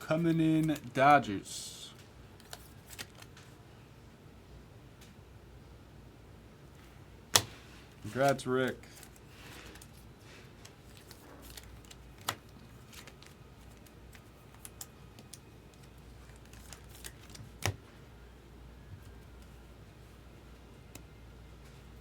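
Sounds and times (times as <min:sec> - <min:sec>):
cards clicking and tapping: 0:07.4 - 0:08.4, 0:11.0 - 0:17.8.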